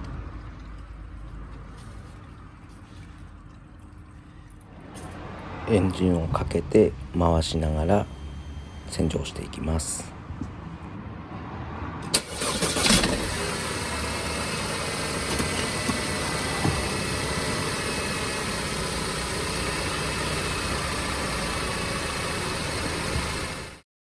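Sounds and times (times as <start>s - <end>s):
car engine cranking and idling: 0.0s - 11.3s, 12.0s - 23.8s
ignition click: 12.1s - 13.8s.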